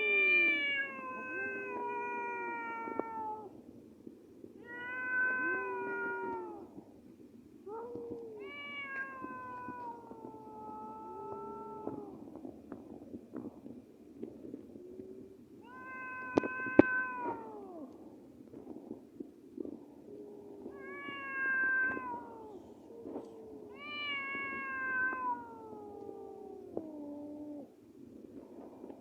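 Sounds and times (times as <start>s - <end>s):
cats yowling: 0.0s - 3.5s, 4.6s - 6.7s, 7.7s - 12.2s, 15.7s - 17.9s, 20.6s - 27.7s.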